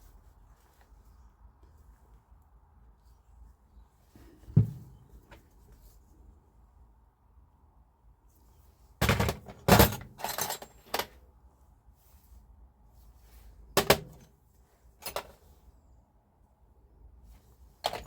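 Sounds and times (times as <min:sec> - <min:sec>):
metal parts clattering: 0:09.0 - 0:11.1, 0:15.0 - 0:15.4.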